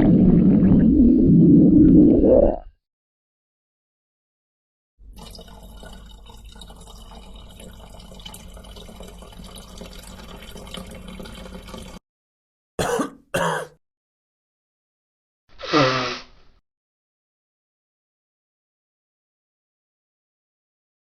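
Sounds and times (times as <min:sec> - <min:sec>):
running water trickling: 0:05.1 - 0:12.0
person coughing: 0:12.8 - 0:13.8.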